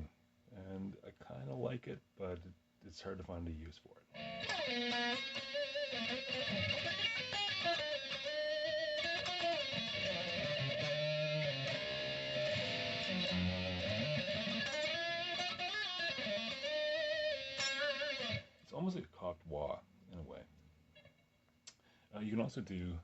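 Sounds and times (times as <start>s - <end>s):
distorted electric guitar with flanger: 4.2s - 18.5s.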